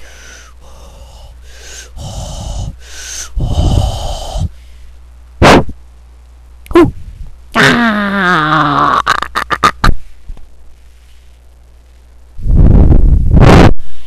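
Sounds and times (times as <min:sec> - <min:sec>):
person wheezing and huffing: 0:00.0 - 0:04.6
sharp mouth puff: 0:05.4 - 0:05.8.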